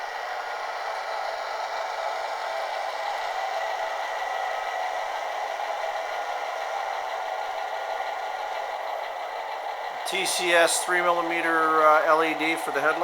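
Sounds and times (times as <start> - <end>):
model train rattling on track: 0.0 - 13.0
diesel engine through tiny speaker: 10.0 - 13.0.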